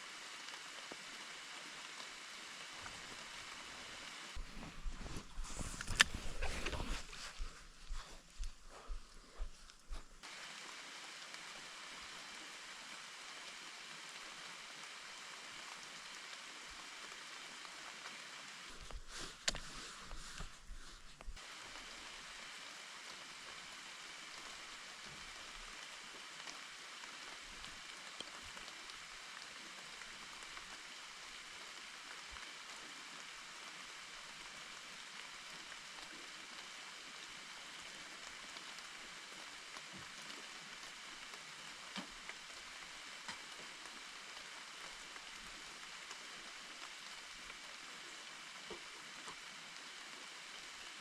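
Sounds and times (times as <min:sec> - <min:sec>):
steady watery hiss: 0:00.0 - 0:51.0
faint ticks: 0:18.0 - 0:21.4.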